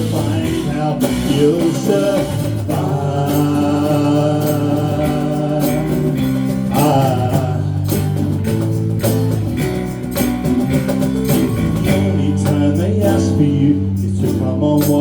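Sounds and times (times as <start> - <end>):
guitar: 0.0 - 15.0
live band music: 0.0 - 15.0.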